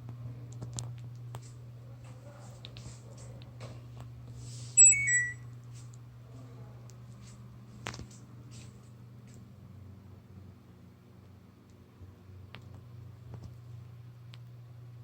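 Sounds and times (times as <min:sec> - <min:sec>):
three-tone electronic chime: 0:04.8 - 0:05.4.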